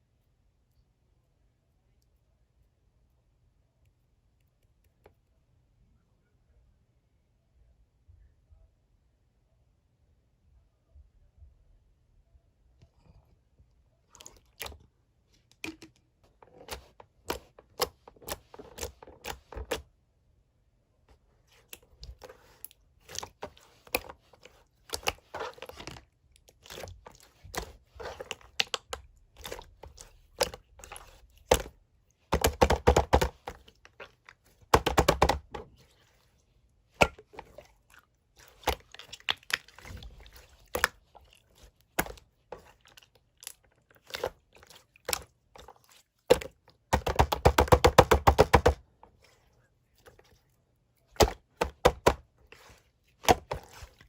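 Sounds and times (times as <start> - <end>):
crunching and clicking taps: 32.3 - 35.7, 46.3 - 49.1.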